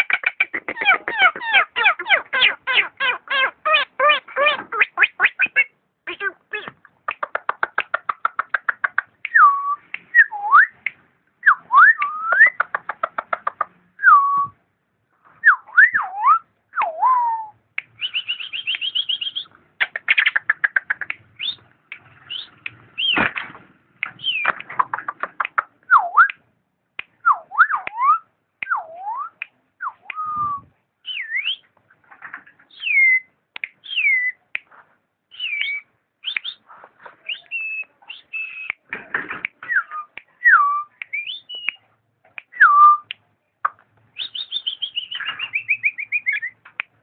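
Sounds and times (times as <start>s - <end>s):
starling singing: 0.0s - 10.6s, 15.6s - 23.3s, 24.0s - 24.7s, 35.3s - 38.8s, 44.2s - 46.6s.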